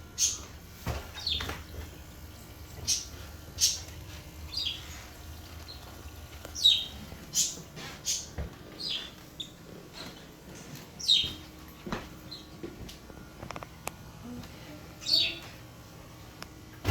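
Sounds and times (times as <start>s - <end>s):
bird chirping: 6.6s - 10.3s, 11.0s - 11.4s.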